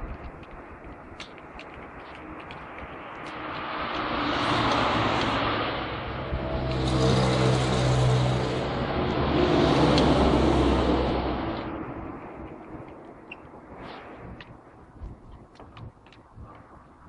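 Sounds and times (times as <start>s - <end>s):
motor vehicle running: 0.0s - 13.2s.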